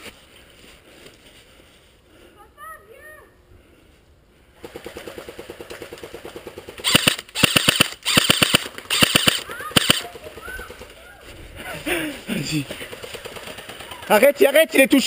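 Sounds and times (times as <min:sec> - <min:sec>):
loud airsoft gun bursts: 0:06.6 - 0:10.1.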